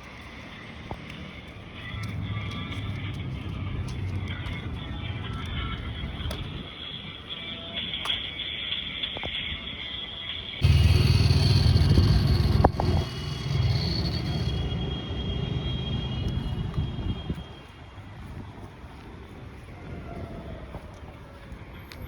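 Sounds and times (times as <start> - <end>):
toy truck motor running: 10.6 - 16.4.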